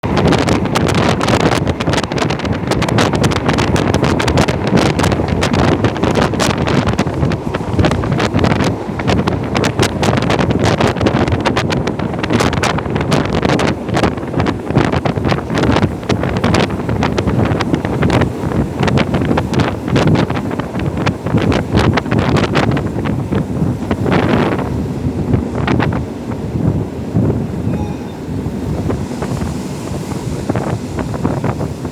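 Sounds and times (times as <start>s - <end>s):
wind buffeting the microphone: 0.0s - 31.9s.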